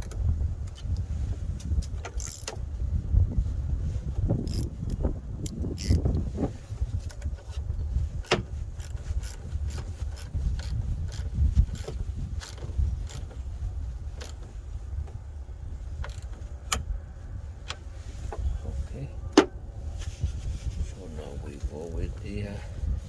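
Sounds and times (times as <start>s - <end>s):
wind rumble on microphone: 0.0s - 23.0s.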